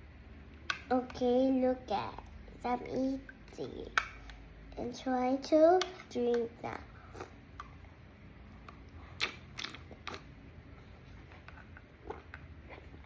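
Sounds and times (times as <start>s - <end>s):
child chewing food: 6.8s - 13.0s
mouth clicks: 9.2s - 10.3s.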